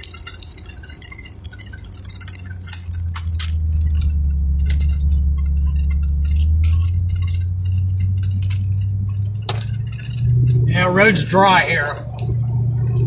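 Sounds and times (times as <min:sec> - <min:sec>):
light clicks and rattles: 0:00.0 - 0:10.7
vehicle rumble from inside cabin: 0:02.7 - 0:13.0.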